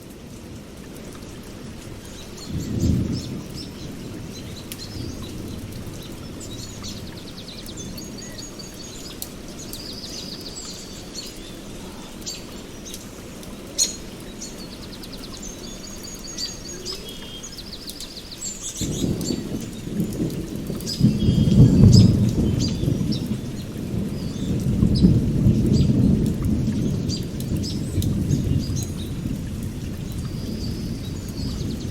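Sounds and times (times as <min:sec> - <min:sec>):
steady rain: 0:00.0 - 0:31.9
rolling thunder: 0:02.2 - 0:09.0, 0:18.7 - 0:31.9.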